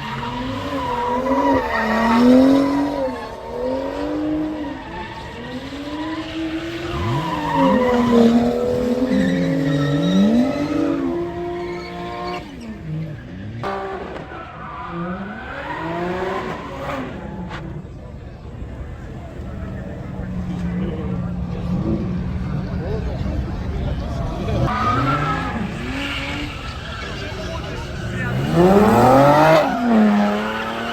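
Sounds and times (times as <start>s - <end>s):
tyres squealing: 0.0s - 13.0s, 24.2s - 30.9s
car engines revving hard: 0.0s - 30.9s.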